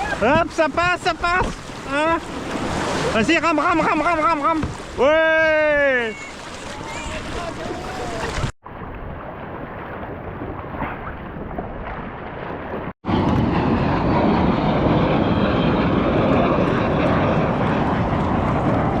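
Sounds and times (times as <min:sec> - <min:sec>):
water noise: 0:00.0 - 0:19.0
wind on microphone: 0:04.6 - 0:19.0.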